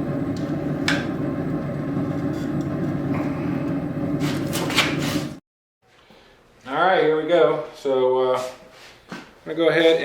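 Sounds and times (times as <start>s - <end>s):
forge roaring: 0.0s - 5.4s.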